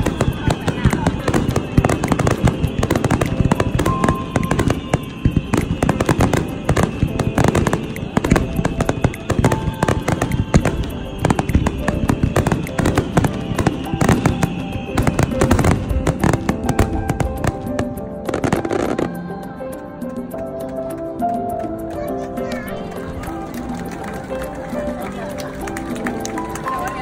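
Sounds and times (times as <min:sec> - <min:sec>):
fireworks bangs and crackles: 0:00.0 - 0:19.4
music playing: 0:00.0 - 0:27.0.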